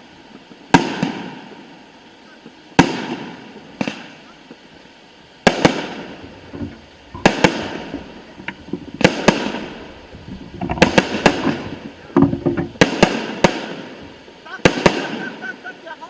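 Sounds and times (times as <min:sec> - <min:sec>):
firework crackling: 0:00.0 - 0:16.0
firework shells bursting: 0:05.2 - 0:15.2.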